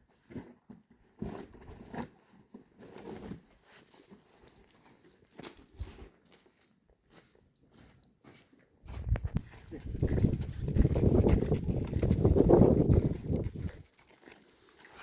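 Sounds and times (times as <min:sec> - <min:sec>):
footsteps crunching in snow: 0:07.1 - 0:13.8.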